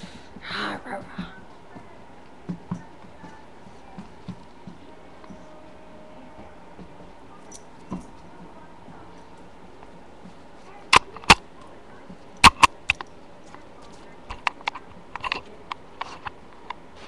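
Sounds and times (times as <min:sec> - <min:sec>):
sharp clicks and knocks: 0:12.4 - 0:13.1.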